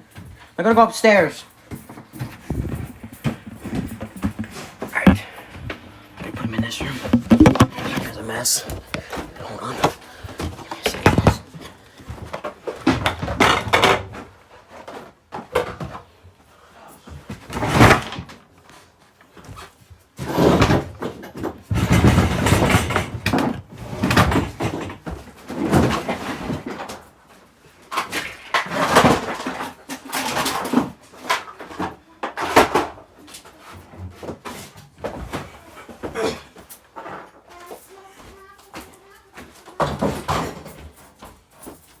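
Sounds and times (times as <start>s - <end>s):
knocks and thumps of handling: 1.7s - 14.2s, 34.1s - 42.0s.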